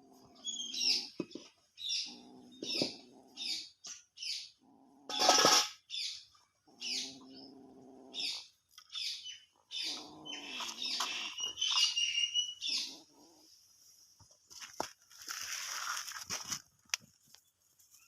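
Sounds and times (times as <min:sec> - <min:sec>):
wavering animal cry: 0:06.6 - 0:13.6
squirrel chirping: 0:08.2 - 0:13.0.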